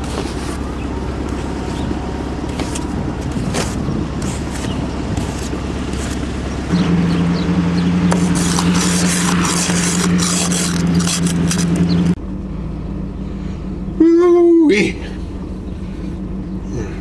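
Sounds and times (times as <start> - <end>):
truck engine running inside cab: 0.0 - 17.0.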